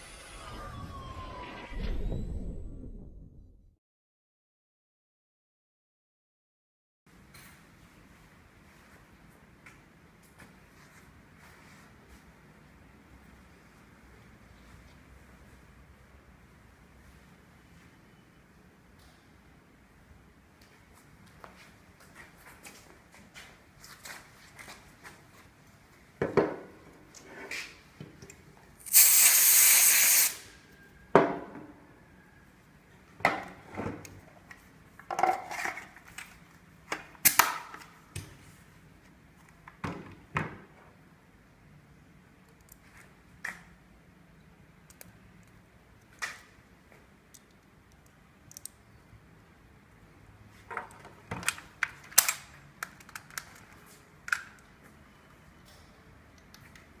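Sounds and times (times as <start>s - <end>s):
gas hissing: 28.9s - 30.5s
shells and mechanism clicking: 47.3s - 48.8s, 51.4s - 54.7s.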